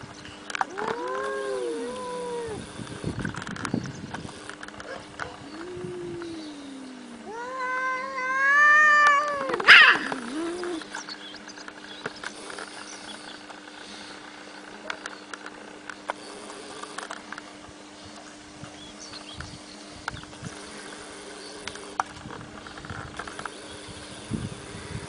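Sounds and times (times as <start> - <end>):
cats caterwauling: 0.6 - 2.6, 5.3 - 10.9.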